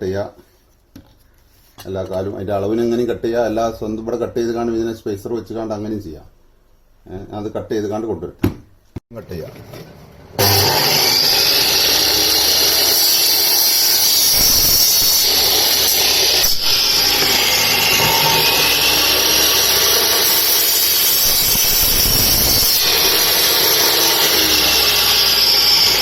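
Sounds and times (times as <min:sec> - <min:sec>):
power cutter grinding with high whine: 0:10.4 - 0:26.0.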